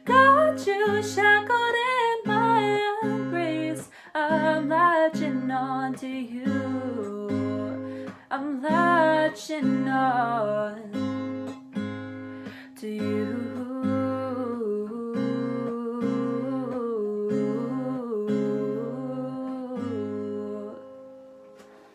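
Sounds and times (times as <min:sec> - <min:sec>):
person singing wordless melody: 0:12.8 - 0:21.3.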